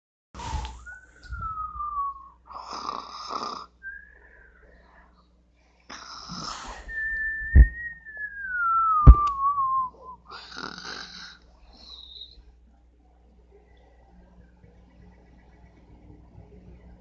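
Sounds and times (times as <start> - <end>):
cartoon rasping snore: 2.5 - 3.7, 10.3 - 11.4.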